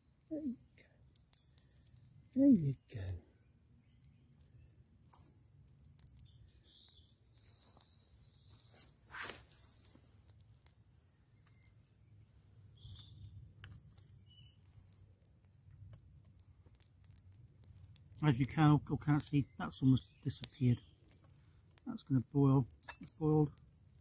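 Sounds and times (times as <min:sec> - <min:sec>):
small ticks: 0:00.8 - 0:24.0
brief crackle: 0:05.9 - 0:11.8, 0:12.8 - 0:24.0.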